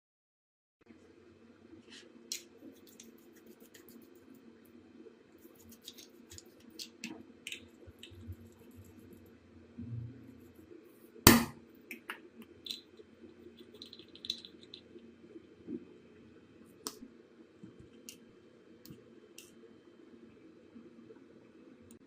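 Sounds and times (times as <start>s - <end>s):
sharp knock: 11.3s - 11.6s.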